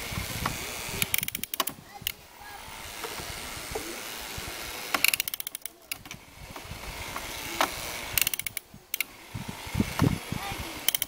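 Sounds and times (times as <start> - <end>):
steady hiss: 0.0 - 11.0
rapid clicking: 0.4 - 2.2, 4.9 - 6.2, 7.1 - 9.1, 10.8 - 11.0.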